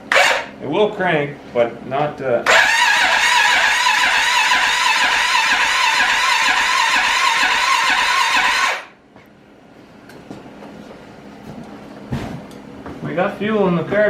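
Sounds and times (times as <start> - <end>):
engine cranking on starter: 0.1 - 0.5, 2.5 - 8.9.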